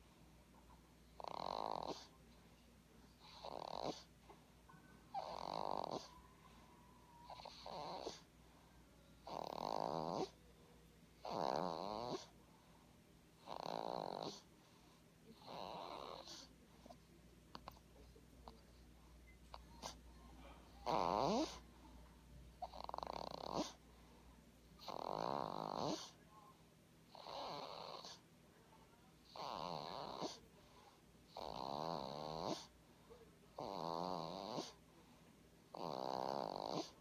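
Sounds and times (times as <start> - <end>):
person snoring: 5.2 - 6.2, 9.2 - 10.4, 11.2 - 12.3, 20.8 - 21.6, 33.6 - 34.8, 35.7 - 37.0.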